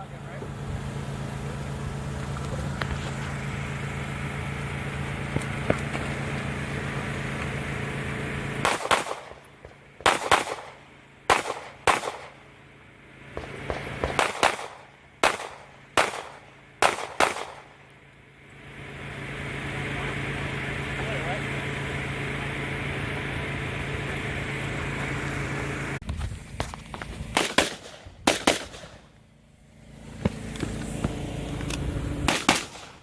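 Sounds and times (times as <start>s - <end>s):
steady hum: 0.0s - 33.0s
gunshots: 8.6s - 12.5s, 13.3s - 17.8s, 27.3s - 29.1s, 32.2s - 33.0s.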